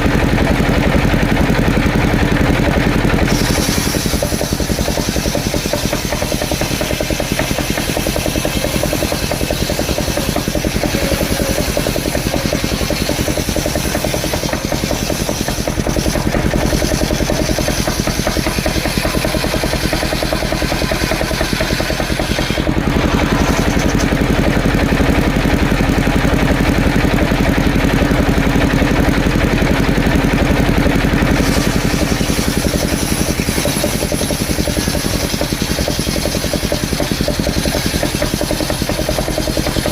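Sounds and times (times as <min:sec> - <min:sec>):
engine-driven wood saw running: 0:00.0 - 0:39.9.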